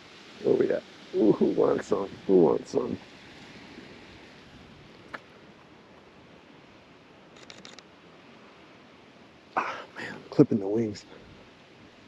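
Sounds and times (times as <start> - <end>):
faint steady hiss: 0.0 - 12.0
camera shutter clicks: 7.4 - 7.9.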